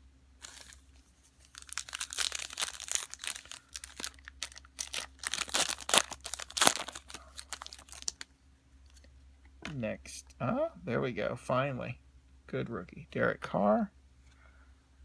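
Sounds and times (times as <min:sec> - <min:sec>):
foil wrapper crinkling and tearing: 0:00.4 - 0:08.3.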